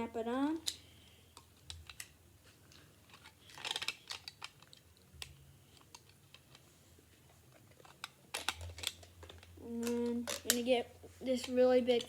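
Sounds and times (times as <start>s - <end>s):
plastic bricks clicking: 3.1s - 6.6s, 7.8s - 10.6s.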